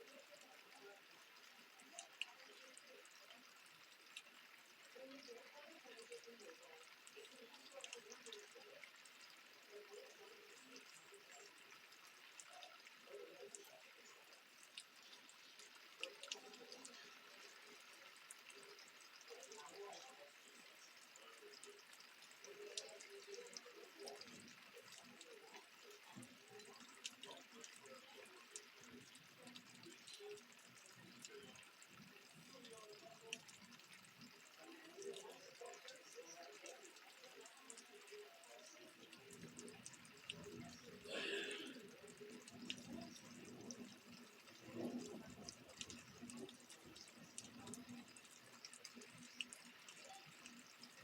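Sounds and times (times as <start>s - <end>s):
faint rain dripping: 0.0s - 51.0s.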